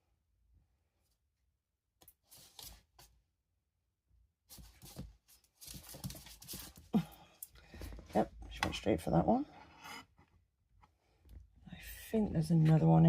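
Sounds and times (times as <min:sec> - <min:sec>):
faint rustling and scratching: 0:04.5 - 0:07.1.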